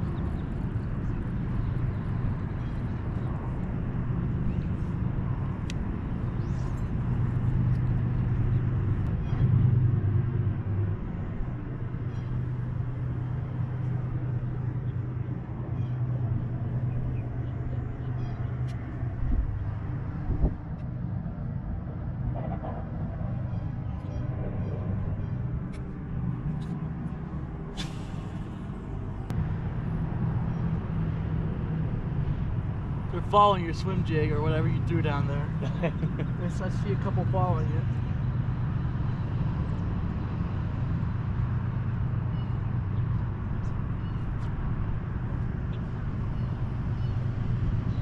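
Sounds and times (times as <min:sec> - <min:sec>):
boat motor humming: 0:00.0 - 0:48.0
short hiss: 0:27.8 - 0:28.6.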